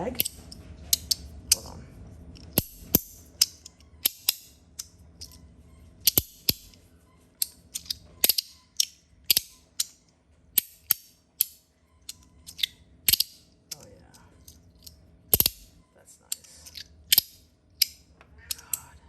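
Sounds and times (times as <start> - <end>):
metal fidget slider clacking: 0.1 - 1.7, 2.3 - 6.8, 7.4 - 15.7.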